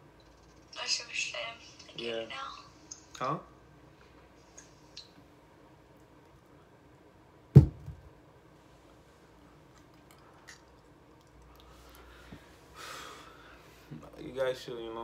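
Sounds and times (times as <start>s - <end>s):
loud thump: 7.6s - 8.1s
soft knock: 7.6s - 8.1s.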